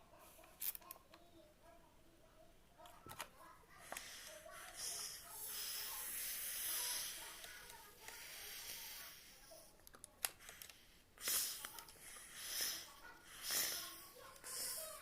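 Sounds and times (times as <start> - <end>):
hissing puffs: 3.7 - 15.0.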